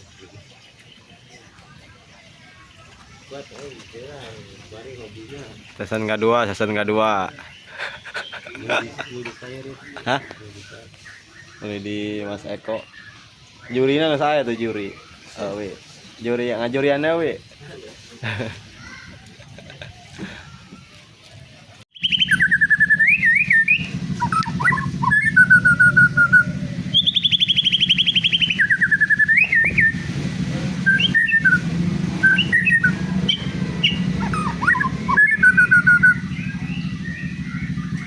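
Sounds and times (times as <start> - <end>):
bird singing whistles and trills: 22.0 - 30.1, 30.8 - 38.0.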